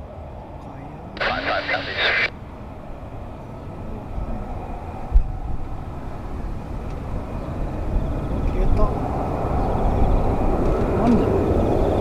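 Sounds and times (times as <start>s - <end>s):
distant jet aircraft rumble: 0.0s - 12.0s
radio scanner transmission: 1.2s - 2.3s.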